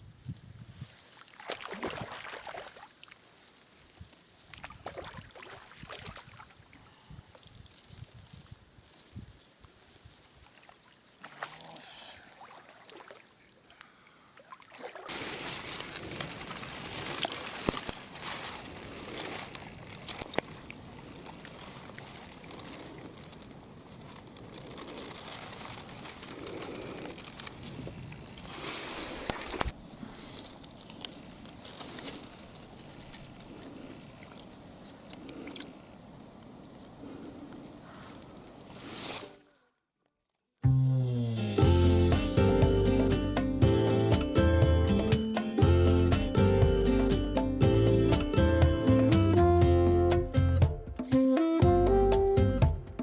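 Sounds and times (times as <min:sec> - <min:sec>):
stream water rushing and splashing: 0:10.8 - 0:13.7.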